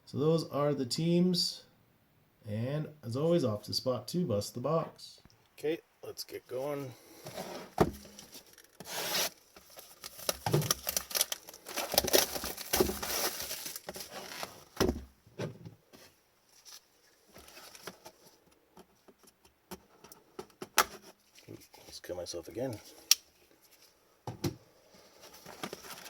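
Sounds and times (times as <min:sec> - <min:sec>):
shrink-wrap and cardboard rustling: 0:07.3 - 0:15.0, 0:16.5 - 0:18.4, 0:25.0 - 0:26.0.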